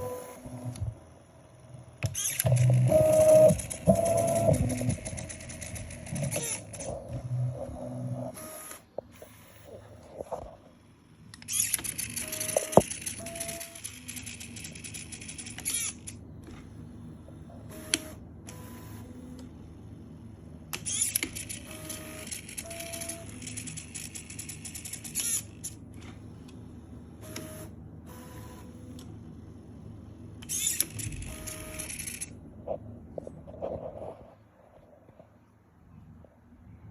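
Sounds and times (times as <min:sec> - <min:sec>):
servo whirring bursts: 0:00.0 - 0:09.9, 0:11.4 - 0:16.2, 0:20.8 - 0:25.8, 0:30.4 - 0:32.3
stepper motor tones: 0:00.0 - 0:10.6, 0:11.4 - 0:19.5
steady low hum: 0:00.0 - 0:36.9.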